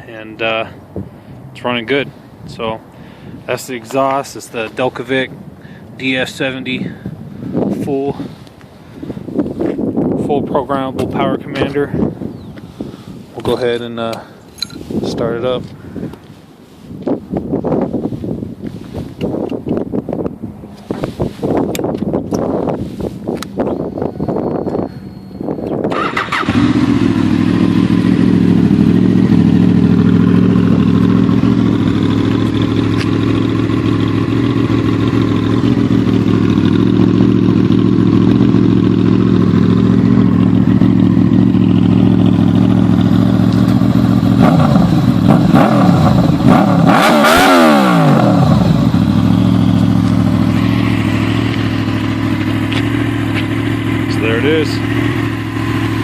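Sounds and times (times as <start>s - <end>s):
motorcycle engine idling: 24.7s - 46.5s, 48.1s - 56.0s.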